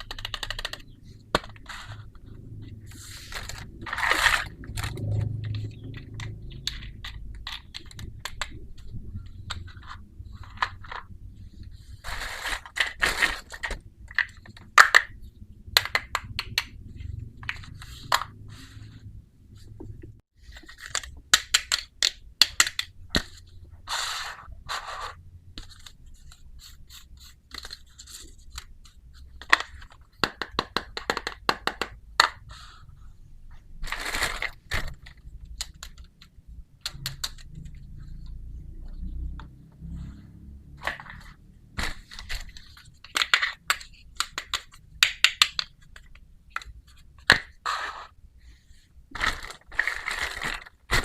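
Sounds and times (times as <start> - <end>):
plastic toy pieces clicking: 0.0 - 1.5, 20.8 - 22.9, 42.3 - 47.5.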